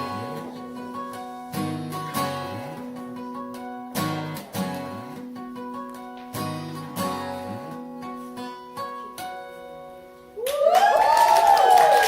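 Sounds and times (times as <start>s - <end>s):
acoustic guitar strummed chords: 0.0s - 10.4s
people cheering: 10.4s - 12.0s
people clapping: 10.4s - 12.0s.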